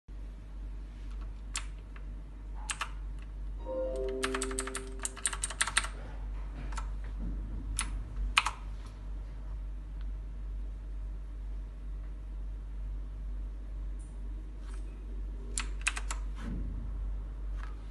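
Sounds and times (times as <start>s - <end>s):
mechanical keyboard keystrokes: 2.7s - 3.0s, 4.2s - 5.9s, 7.8s - 8.6s, 15.6s - 16.2s.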